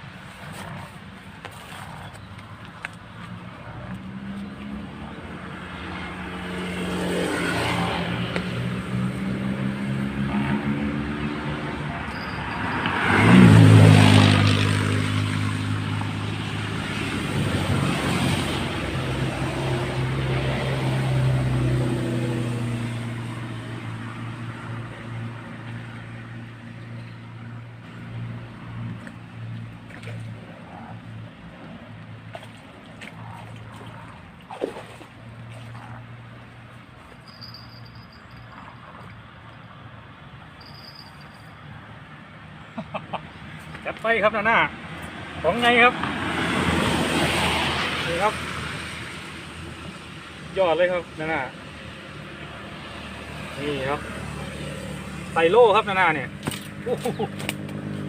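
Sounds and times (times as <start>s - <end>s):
motor engine passing by: 3.9s - 31.3s, 32.4s - 36.3s, 45.3s - 50.0s, 50.7s - 58.0s.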